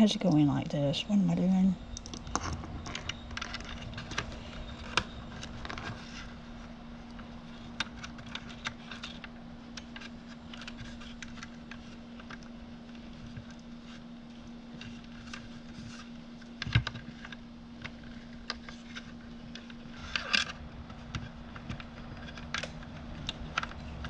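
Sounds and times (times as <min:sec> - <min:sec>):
steady low hum: 0:00.0 - 0:24.0
small clicks and taps of parts: 0:16.5 - 0:24.0.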